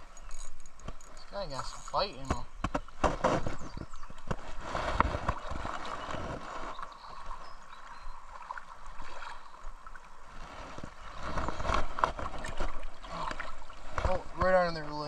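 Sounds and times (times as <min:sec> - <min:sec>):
creek water gurgling: 0:00.0 - 0:15.0
small knocks and clicks: 0:00.2 - 0:04.4.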